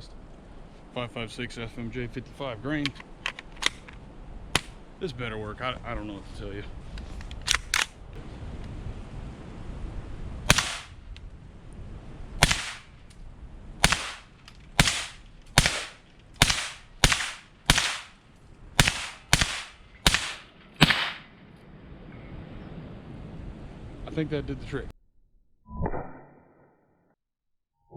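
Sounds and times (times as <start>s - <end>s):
rifle shots with echo: 10.5s - 11.0s, 12.4s - 13.0s, 13.8s - 18.2s, 18.8s - 21.4s.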